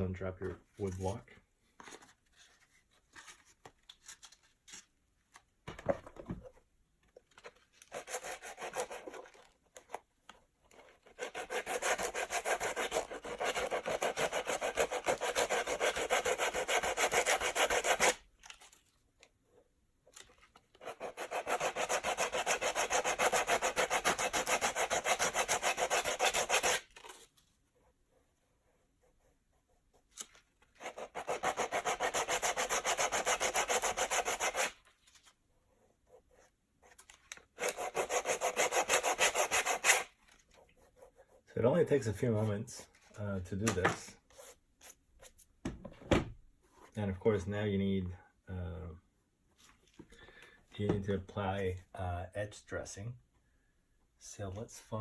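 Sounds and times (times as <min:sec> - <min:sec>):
sandpaper sanding shoe sole: 0:07.9 - 0:09.4, 0:11.0 - 0:18.2, 0:20.8 - 0:27.1, 0:30.8 - 0:34.8, 0:37.6 - 0:40.2.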